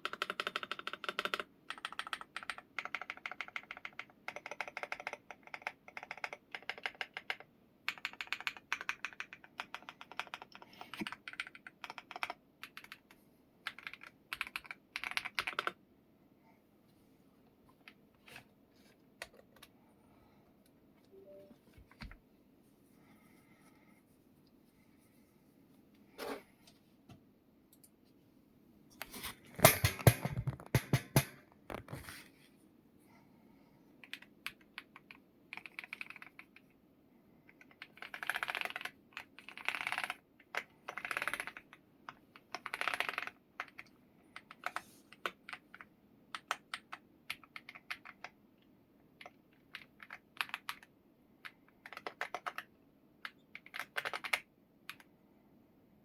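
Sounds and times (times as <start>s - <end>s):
mechanical keyboard typing: 0.0s - 15.8s, 34.0s - 36.7s, 37.5s - 48.4s, 49.2s - 55.1s.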